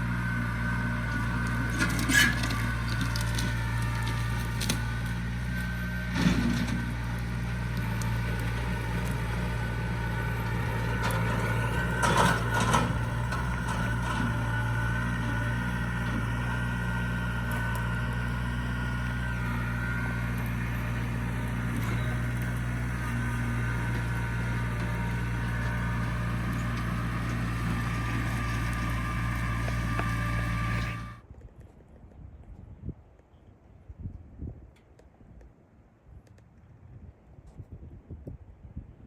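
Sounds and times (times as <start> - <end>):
wood chipper chipping bursts: 0.0 - 31.2
wood chipper engine running: 0.0 - 31.2.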